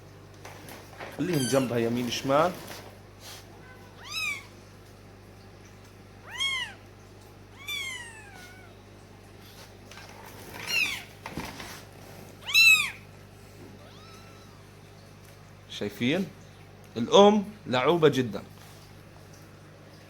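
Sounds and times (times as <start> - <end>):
cat meowing: 1.2 - 2.0, 3.6 - 4.6, 6.2 - 6.8, 7.5 - 8.8, 10.6 - 11.1, 12.4 - 13.0, 13.8 - 14.8.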